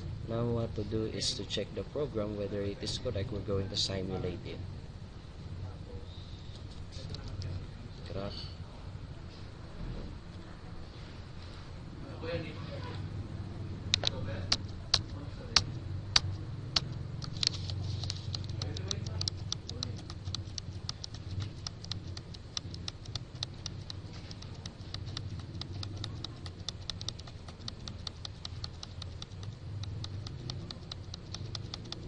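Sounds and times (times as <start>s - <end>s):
low steady hum: 0.0s - 32.0s
rapid key clicking: 14.0s - 32.0s.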